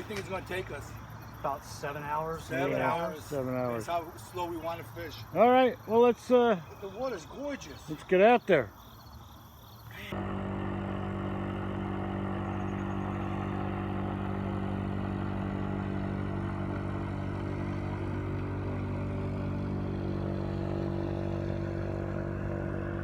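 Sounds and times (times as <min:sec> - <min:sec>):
engine running steadily: 0:10.0 - 0:23.0.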